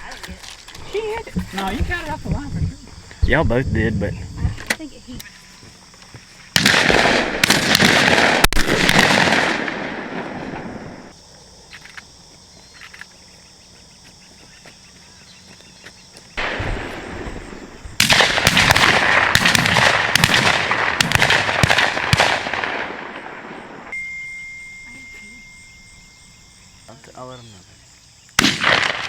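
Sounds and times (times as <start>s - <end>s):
shotguns firing: 6.6s - 11.0s, 16.4s - 23.9s, 28.4s - 29.0s.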